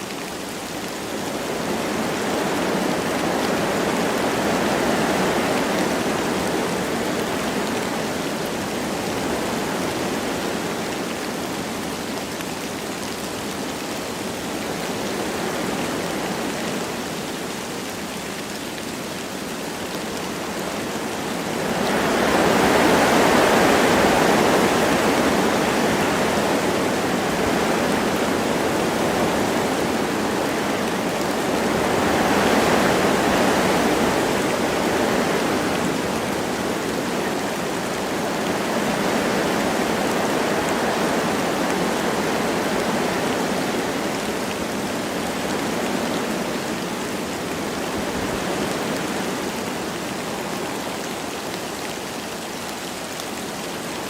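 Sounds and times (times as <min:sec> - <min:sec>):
light rain: 0:00.0 - 0:54.0
wind blowing through trees: 0:00.0 - 0:54.0.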